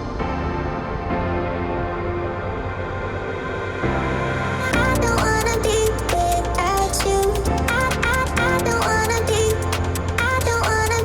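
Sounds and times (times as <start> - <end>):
steady bass: 3.8 - 11.0.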